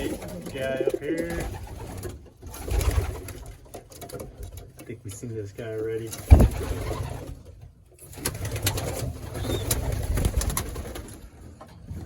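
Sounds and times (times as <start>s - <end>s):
pigeons cooing: 0.0s - 3.6s, 8.3s - 11.1s.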